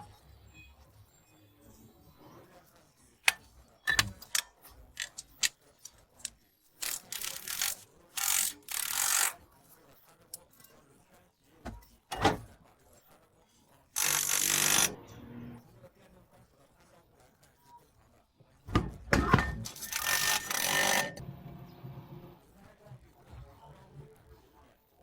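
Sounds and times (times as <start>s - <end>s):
metal tools clicking and knocking: 3.3s - 9.3s, 18.7s - 21.2s.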